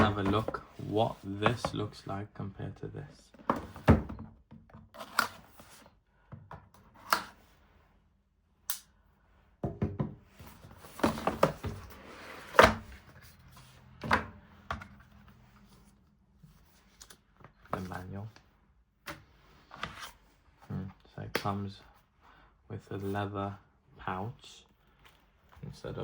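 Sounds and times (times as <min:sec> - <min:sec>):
box knocks and thunks: 0:00.0 - 0:00.7, 0:10.9 - 0:11.9.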